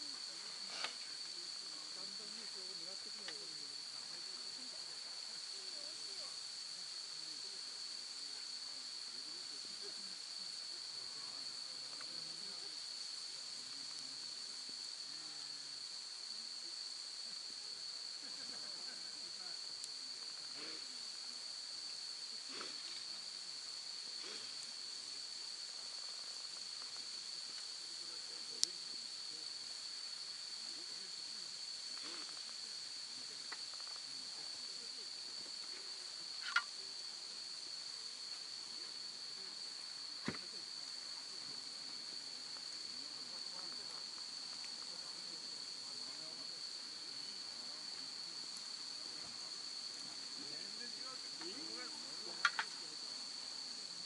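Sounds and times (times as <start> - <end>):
crickets chirring: 0.0 - 54.0
faint ticks: 28.6 - 28.8, 36.4 - 36.8, 52.4 - 52.8.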